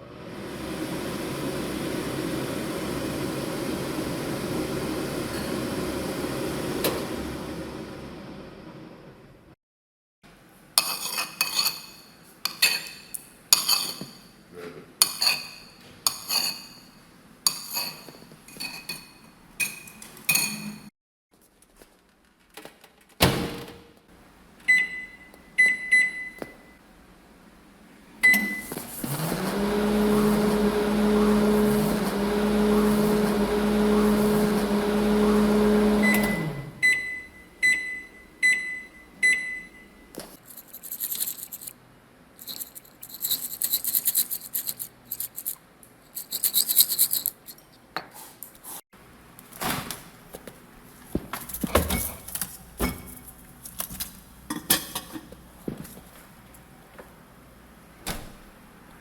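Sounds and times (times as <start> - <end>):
microwave oven humming: 0.0 - 9.6, 24.2 - 40.1
crockery clinking: 10.8 - 14.4, 15.0 - 20.9
microwave end-of-cycle beeps: 24.6 - 26.8, 28.2 - 40.2
keypad beeps: 36.1 - 39.9.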